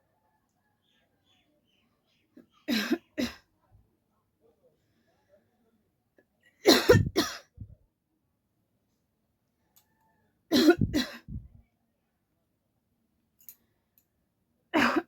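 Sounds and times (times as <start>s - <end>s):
person coughing: 6.7s - 7.7s, 10.6s - 11.5s, 14.8s - 15.0s.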